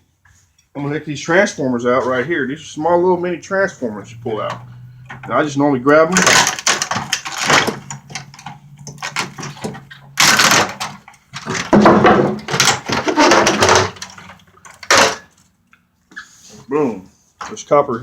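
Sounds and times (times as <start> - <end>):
parts cracking off circuit board: 6.1 - 15.4.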